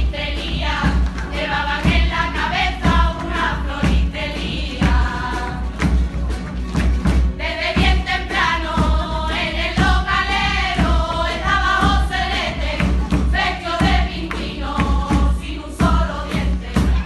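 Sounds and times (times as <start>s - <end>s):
group singing in chorus: 0.0s - 6.1s, 7.4s - 17.0s.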